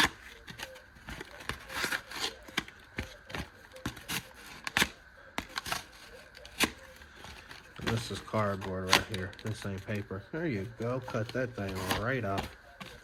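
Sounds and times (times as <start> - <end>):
knife cutting cardboard: 0.0 - 9.6, 10.8 - 13.0.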